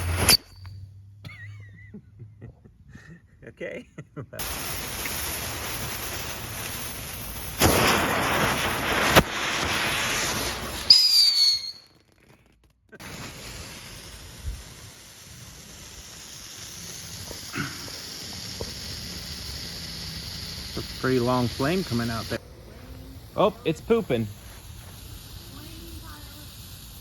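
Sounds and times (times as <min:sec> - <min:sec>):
firework sharp crack: 0:00.0 - 0:00.5, 0:04.4 - 0:27.0
firework hissing: 0:00.0 - 0:00.6, 0:04.4 - 0:27.0
firework whistle: 0:00.0 - 0:00.8, 0:04.4 - 0:12.3, 0:13.0 - 0:27.0
small pops: 0:16.4 - 0:20.9.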